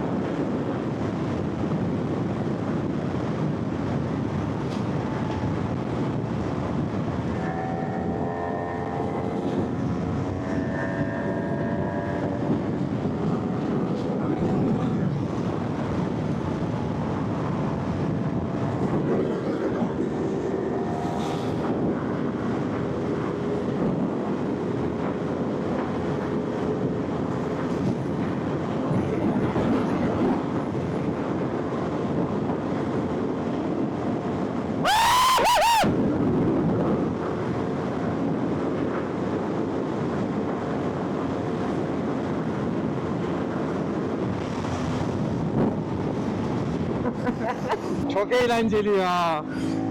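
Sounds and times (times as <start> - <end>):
riding wind noise: 0.0 - 49.9
motorcycle engine rev: 7.3 - 15.0.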